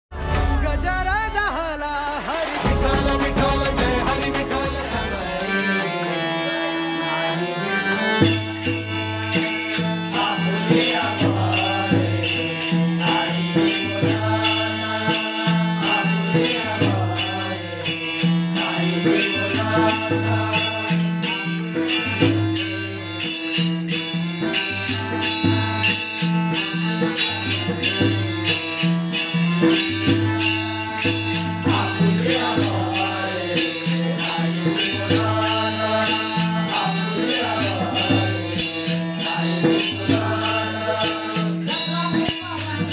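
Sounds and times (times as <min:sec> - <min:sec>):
person singing: 0:00.1 - 0:08.4, 0:31.5 - 0:42.9
hand cymbals: 0:08.3 - 0:42.9.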